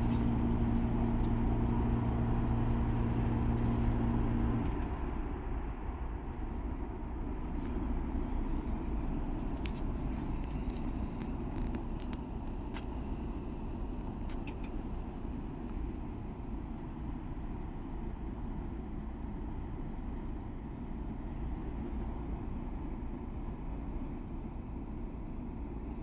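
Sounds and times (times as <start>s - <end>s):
heat pump hum: 0.0s - 26.0s.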